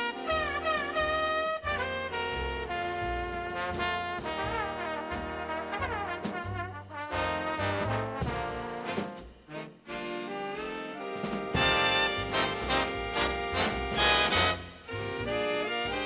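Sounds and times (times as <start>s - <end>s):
brass-like lead melody: 0.0s - 16.0s
moving bass line: 11.6s - 16.0s.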